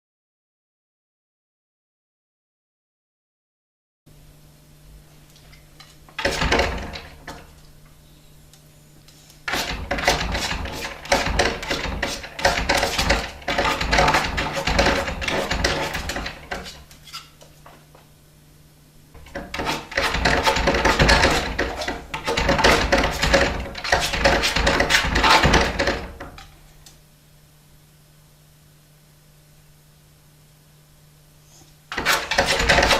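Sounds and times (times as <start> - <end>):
dog scratching at a door: 6.2 - 7.5, 9.5 - 17.4, 19.2 - 26.4, 31.9 - 32.9.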